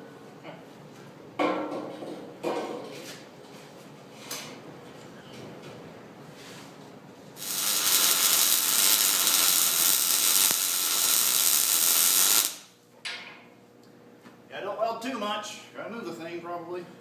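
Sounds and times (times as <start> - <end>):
welder arc crackling: 7.4 - 12.8.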